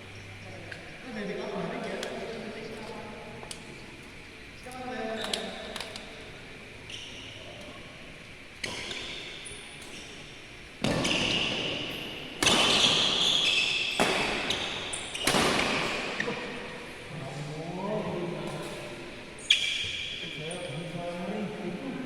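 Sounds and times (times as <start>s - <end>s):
shoe squeaks: 6.8s - 7.8s, 8.6s - 16.0s, 19.4s - 20.8s
racket striking shuttlecock: 12.4s - 13.3s, 13.9s - 16.3s.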